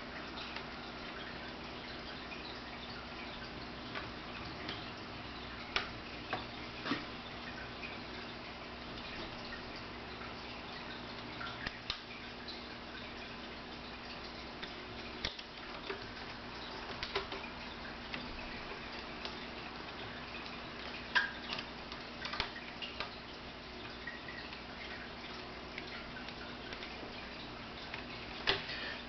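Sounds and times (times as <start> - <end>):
small clicks and taps: 5.7 - 7.1, 14.6 - 16.2, 16.8 - 17.5, 20.4 - 23.2.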